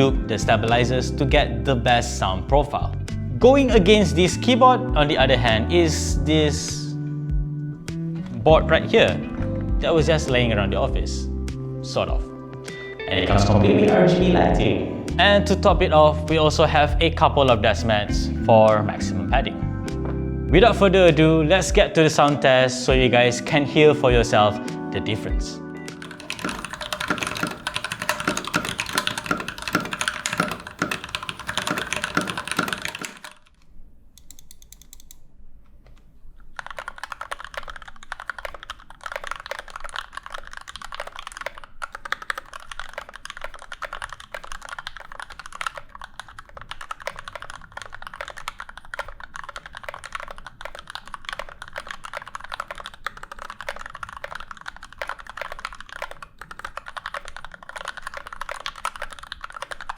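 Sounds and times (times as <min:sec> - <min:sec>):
fast typing on mechanical keyboard: 0:25.9 - 0:33.5, 0:36.5 - 0:59.9.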